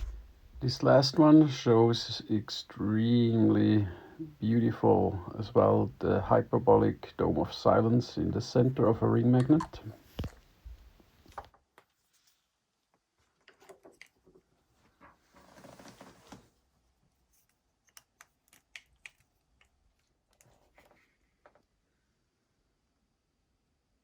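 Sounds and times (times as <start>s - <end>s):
soft rustle: 0.0s - 0.8s, 9.8s - 13.4s, 14.3s - 17.8s.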